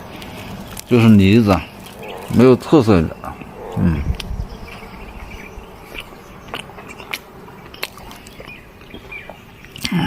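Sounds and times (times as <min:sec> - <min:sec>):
person chewing food: 0:01.6 - 0:02.4, 0:03.1 - 0:10.0.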